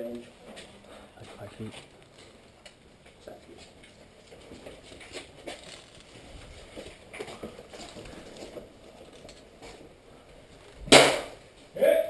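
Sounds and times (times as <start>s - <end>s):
soft footsteps: 0.0s - 11.7s
gear rustling: 3.2s - 10.8s.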